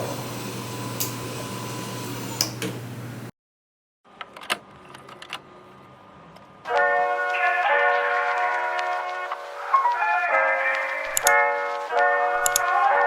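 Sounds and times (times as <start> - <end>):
steady hum: 0.0 - 3.3
sharp clicks: 1.0 - 1.2, 2.4 - 2.8, 10.7 - 11.4, 12.4 - 12.8
music: 6.7 - 13.0.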